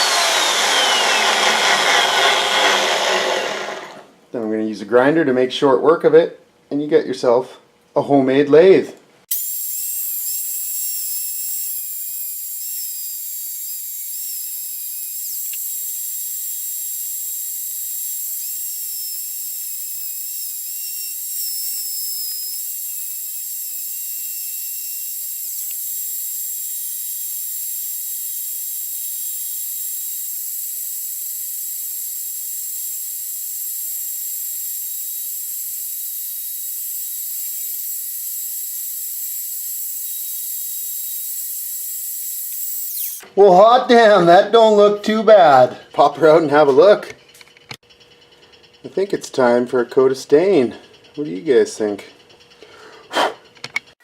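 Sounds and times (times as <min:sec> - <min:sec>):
power tools whining: 0:00.0 - 0:04.2, 0:09.3 - 0:45.3.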